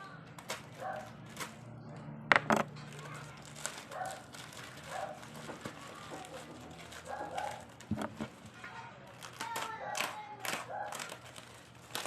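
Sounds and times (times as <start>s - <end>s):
dog barking: 0.8s - 1.1s, 3.9s - 4.3s, 4.9s - 5.2s, 7.0s - 7.7s, 10.7s - 11.1s.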